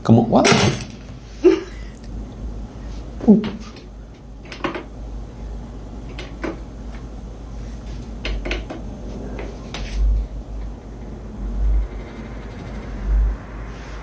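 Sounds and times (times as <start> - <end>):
low rumble: 8.8 - 14.0
heavy low thump: 9.8 - 14.0.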